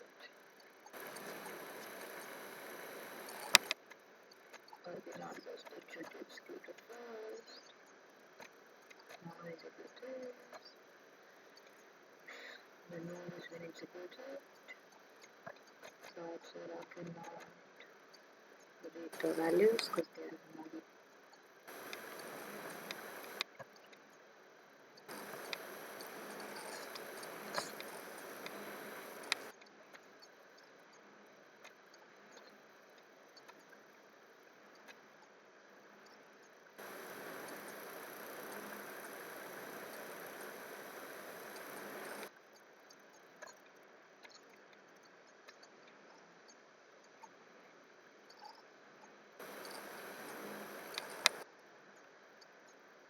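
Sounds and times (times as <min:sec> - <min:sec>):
faint steady hiss: 0:00.0 - 0:53.0
sharp clicks: 0:01.0 - 0:03.8, 0:19.2 - 0:20.0, 0:21.7 - 0:24.0, 0:25.1 - 0:29.5, 0:36.8 - 0:42.3, 0:49.4 - 0:51.4.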